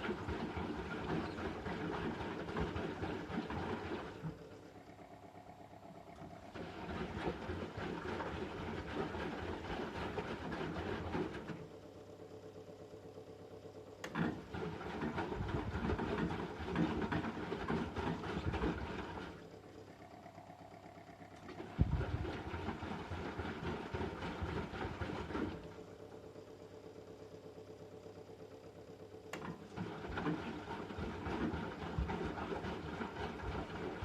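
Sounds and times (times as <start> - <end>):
water churning: 0.0 - 4.5, 6.0 - 11.6, 14.1 - 19.4, 21.5 - 25.8, 29.8 - 34.0
washing machine drum tumbling: 21.5 - 25.6.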